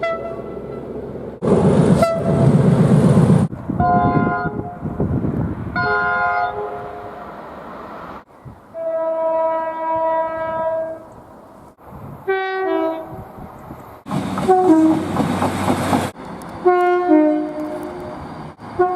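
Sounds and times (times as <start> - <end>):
train horn blasts: 0.0 - 1.0, 2.0 - 2.6, 3.8 - 4.8, 5.7 - 7.2, 8.7 - 11.1, 12.2 - 13.3, 14.4 - 15.2, 16.6 - 18.9.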